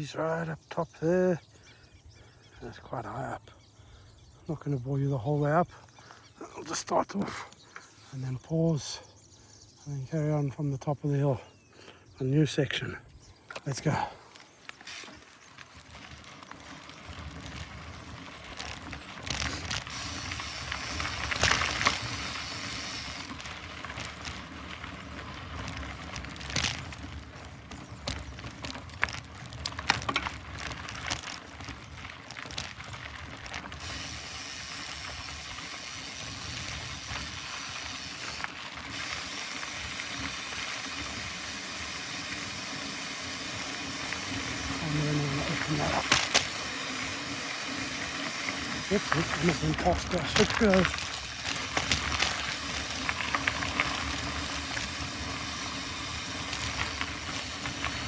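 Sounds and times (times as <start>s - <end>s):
tyre noise: 13.6s - 58.0s
bike chain clicking and rattling: 14.3s - 58.0s.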